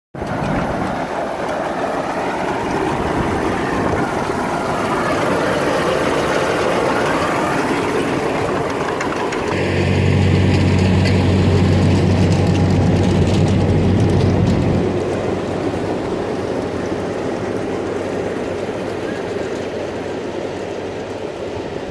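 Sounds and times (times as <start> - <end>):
round baler operating: 0.2 - 21.9
tractor engine running: 0.2 - 21.9
steady low drone: 9.5 - 18.4.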